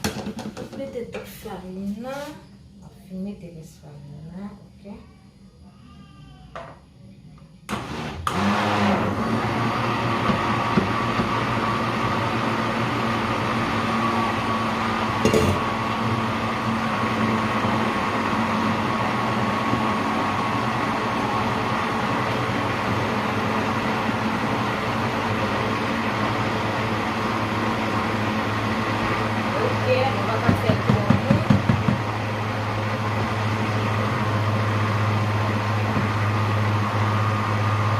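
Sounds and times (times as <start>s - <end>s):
electric blender running: 7.7s - 37.9s.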